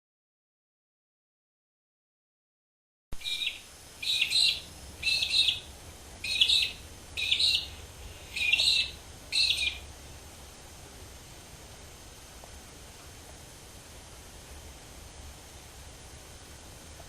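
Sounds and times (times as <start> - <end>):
bird calling: 3.2 - 9.9.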